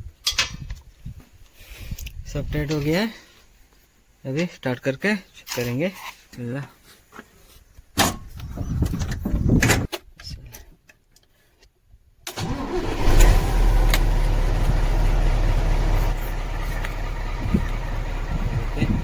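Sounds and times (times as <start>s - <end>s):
starter cranking diesel engine: 12.3s - 19.0s
diesel engine idling: 12.4s - 19.0s.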